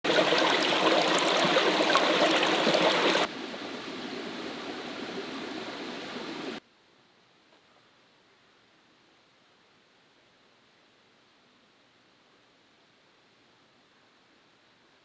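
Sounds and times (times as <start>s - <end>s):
flowing liquid rushing: 0.0s - 3.3s.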